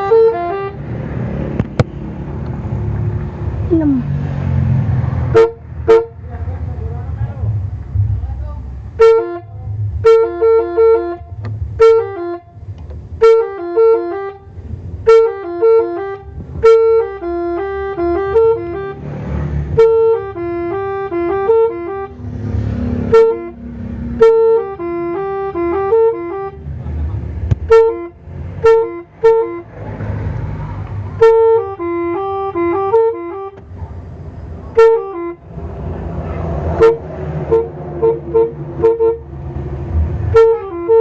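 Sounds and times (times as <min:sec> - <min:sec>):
bus multi-tone air horn melody: 0:00.0 - 0:00.9, 0:05.3 - 0:06.2, 0:08.9 - 0:26.8, 0:27.5 - 0:29.7, 0:31.1 - 0:33.7, 0:34.6 - 0:35.6, 0:36.7 - 0:39.3, 0:40.2 - 0:41.0
low rumble: 0:06.7 - 0:08.9.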